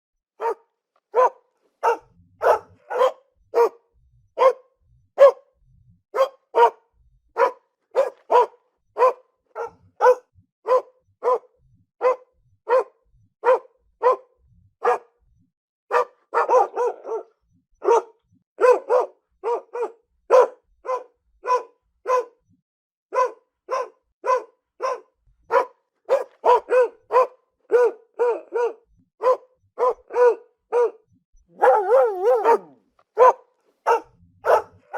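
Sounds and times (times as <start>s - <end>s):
dog barking: 0.4s - 3.8s, 4.4s - 5.5s, 6.1s - 6.8s, 7.4s - 15.2s, 15.9s - 22.5s, 23.1s - 34.9s.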